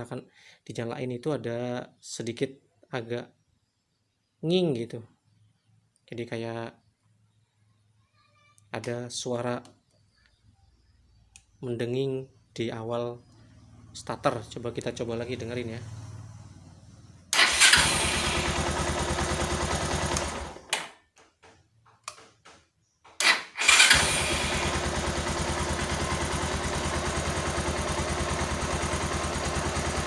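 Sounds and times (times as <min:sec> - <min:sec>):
motorcycle engine starting and running: 0:13.2 - 0:21.0, 0:23.1 - 0:30.0.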